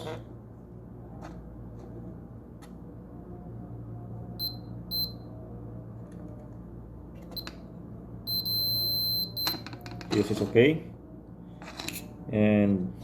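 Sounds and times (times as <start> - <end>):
multimeter buzzer beeping: 4.4 - 5.2, 8.3 - 9.6.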